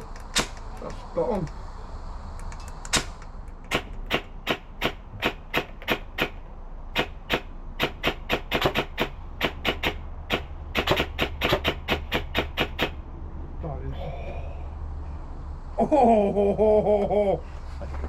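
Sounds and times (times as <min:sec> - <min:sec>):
airsoft gun firing single shots: 0:02.9 - 0:13.0.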